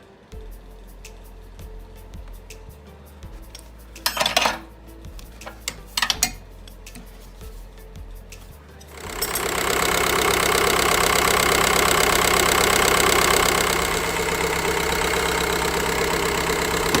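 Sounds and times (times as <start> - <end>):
diesel engine idling: 8.9 - 17.0.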